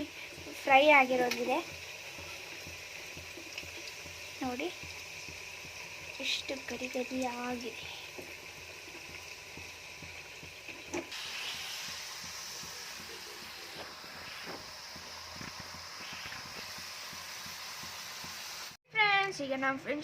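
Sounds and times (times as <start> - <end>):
fries sizzling in hot oil: 0.0 - 18.8.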